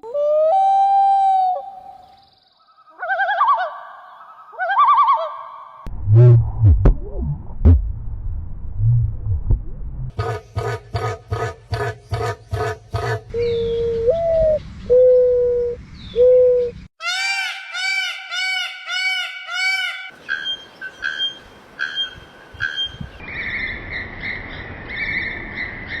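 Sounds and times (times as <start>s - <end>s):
low whistled bird notes: 11.8s - 16.9s.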